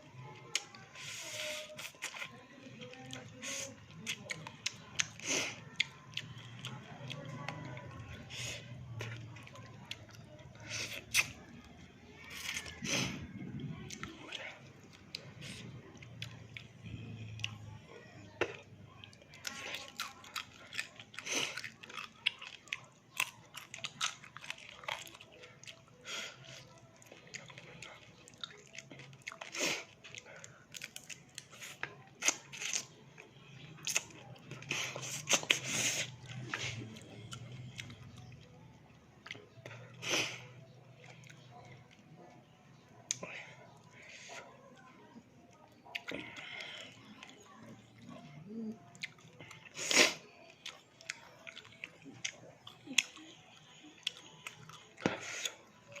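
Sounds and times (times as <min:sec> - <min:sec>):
wet chewing: 0:00.3 - 0:56.0
crunching fried food: 0:00.4 - 0:42.3.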